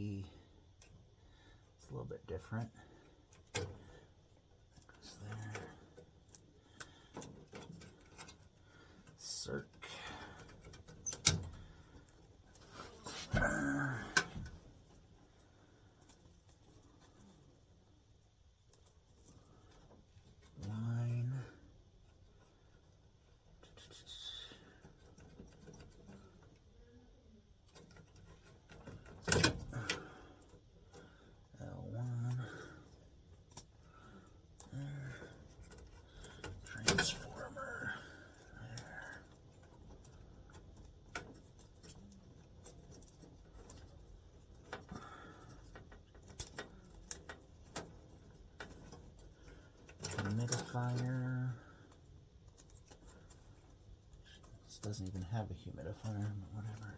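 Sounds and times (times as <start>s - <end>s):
hands scratching and rubbing wires: 27.5s - 56.9s.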